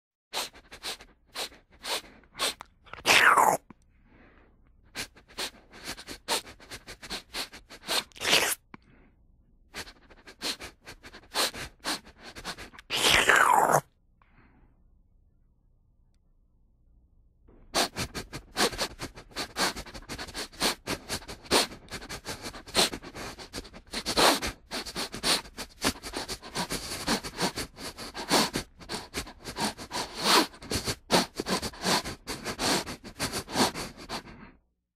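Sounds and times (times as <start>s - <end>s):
wet mouth smacks and chewing: 7.9s - 8.6s.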